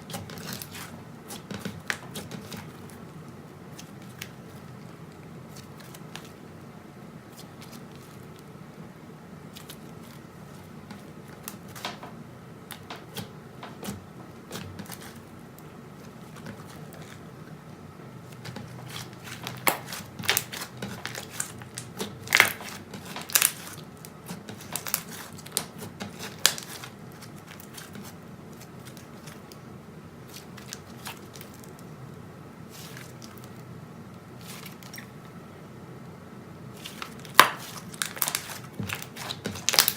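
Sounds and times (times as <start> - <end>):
slime squished by hand: 18.2 - 29.6, 32.7 - 33.6, 36.7 - 39.9.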